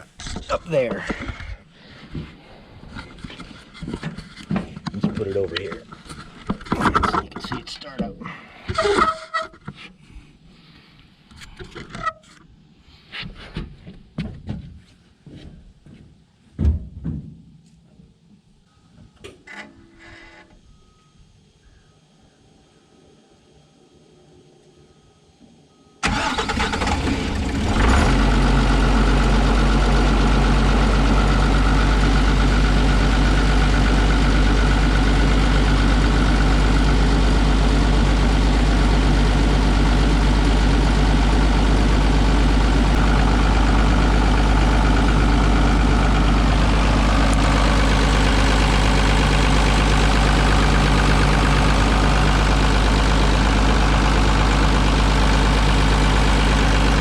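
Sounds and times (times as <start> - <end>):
excavator diesel engine idling: 26.0 - 57.0.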